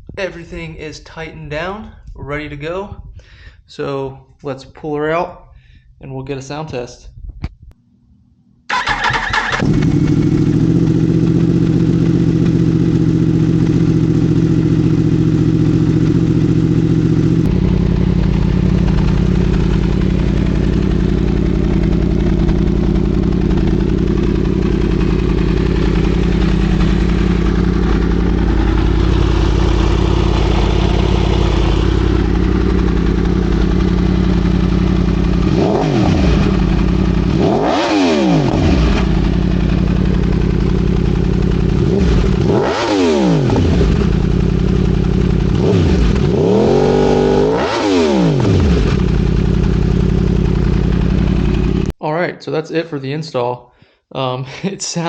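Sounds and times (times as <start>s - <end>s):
motorcycle engine idling: 8.7s - 51.9s
motorcycle engine revving: 8.7s - 51.9s.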